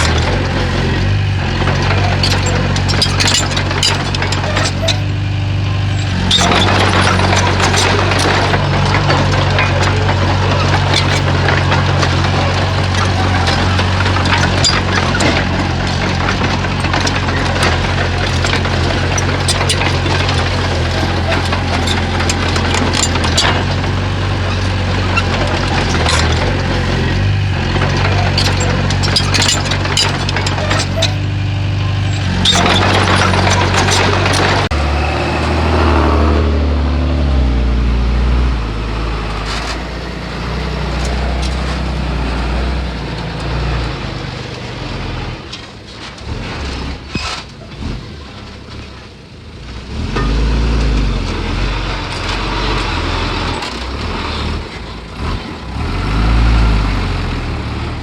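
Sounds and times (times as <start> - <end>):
metal clanks and knocks: 0.0 - 34.8, 39.1 - 47.6
heavy diesel machinery engine: 0.0 - 58.0.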